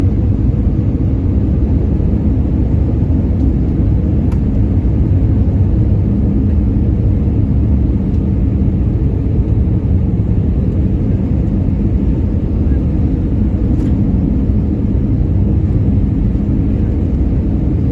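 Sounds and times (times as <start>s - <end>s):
jet airliner low rumble: 0.0s - 17.9s.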